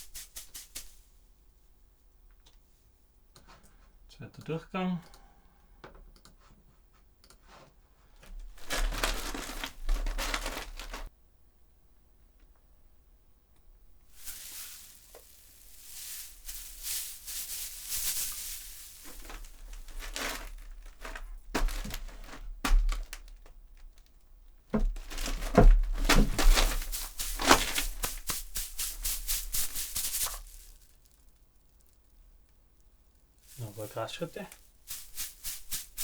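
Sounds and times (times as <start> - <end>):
grass crunching and rustling: 8.5 - 11.1, 14.1 - 23.3, 24.8 - 31.2, 33.4 - 36.0.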